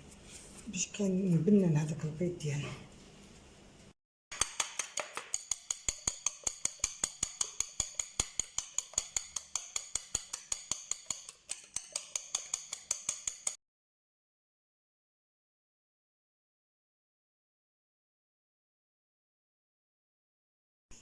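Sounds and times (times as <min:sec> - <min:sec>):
eggs beaten by hand in a bowl: 0:00.0 - 0:02.3, 0:04.3 - 0:13.6.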